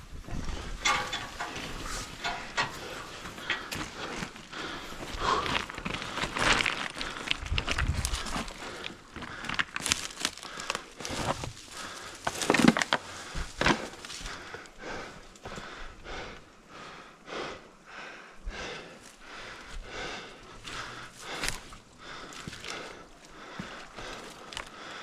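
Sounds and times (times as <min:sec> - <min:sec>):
person breathing heavily: 0:00.0 - 0:25.0
crunching of snow and ice: 0:03.0 - 0:14.5.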